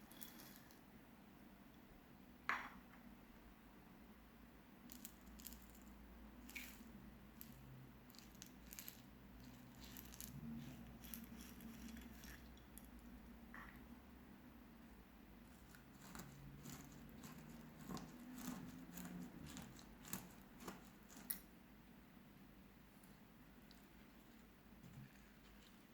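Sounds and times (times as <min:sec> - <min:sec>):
slime squishing: 0:04.9 - 0:13.2, 0:15.5 - 0:21.4.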